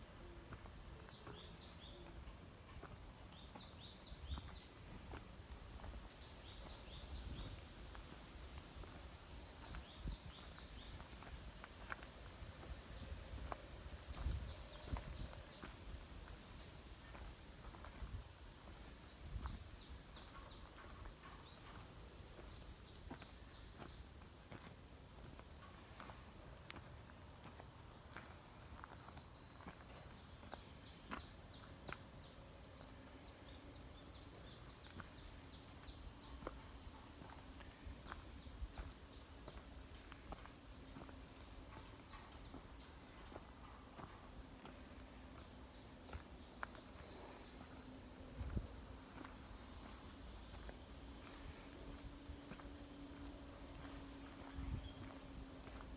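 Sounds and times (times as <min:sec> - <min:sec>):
insects chirring: 0:00.1 - 0:55.9
footsteps on forest trail: 0:34.1 - 0:55.9.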